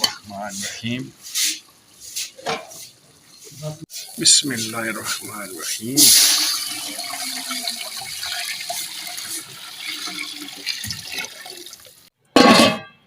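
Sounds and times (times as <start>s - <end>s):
water bubbling in a pot: 4.0s - 12.2s.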